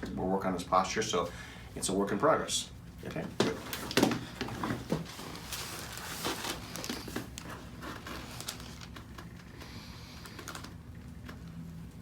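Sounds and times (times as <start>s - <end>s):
rustling and handling noise: 2.8s - 12.0s.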